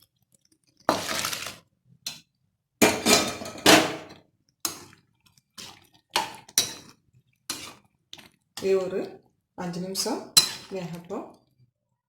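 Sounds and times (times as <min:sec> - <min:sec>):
metal utensils clanking and scraping: 0:00.9 - 0:01.6, 0:02.8 - 0:04.1, 0:10.4 - 0:10.9.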